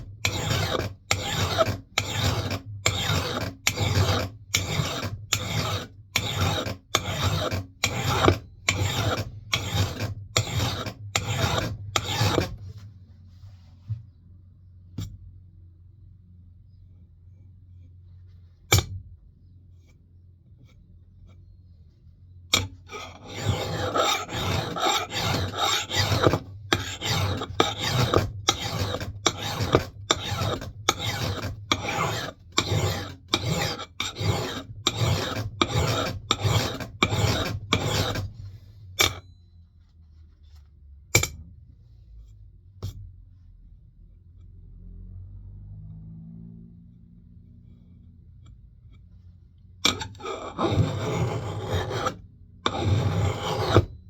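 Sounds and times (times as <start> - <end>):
file rasping on steel: 0.0 - 12.6, 22.5 - 39.2, 49.8 - 54.0.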